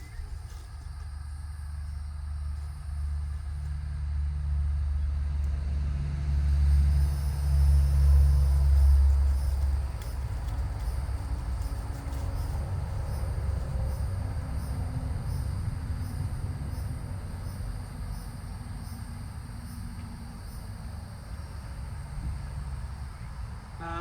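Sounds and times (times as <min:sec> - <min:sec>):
low motor-like rumble: 0:00.0 - 0:24.0.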